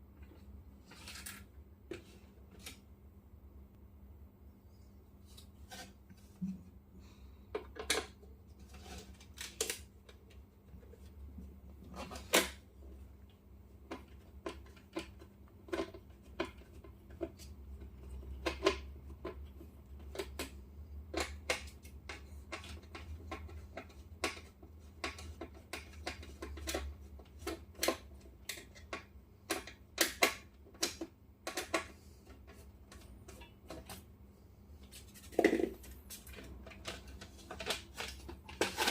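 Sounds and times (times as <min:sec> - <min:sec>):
plastic and cardboard rustling: 0:08.5 - 0:12.6, 0:34.8 - 0:38.9.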